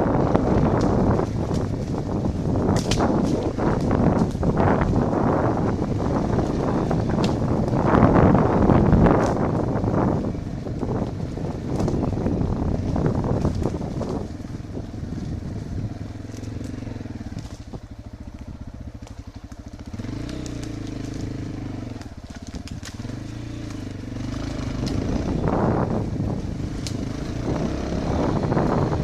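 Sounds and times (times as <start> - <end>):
motorcycle engine revving: 0.0 - 29.0
wind on microphone: 0.0 - 29.0
clicks and crackles: 0.7 - 5.0, 6.3 - 7.8, 9.1 - 9.7, 10.8 - 12.2, 12.8 - 14.6, 15.9 - 25.3, 26.7 - 27.2.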